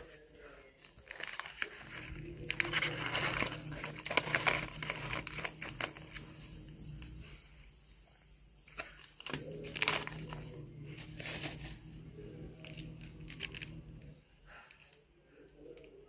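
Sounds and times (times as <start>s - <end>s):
low steady hum: 0.0s - 16.0s
crinkling and crunching while eating: 0.8s - 6.4s, 8.8s - 13.8s.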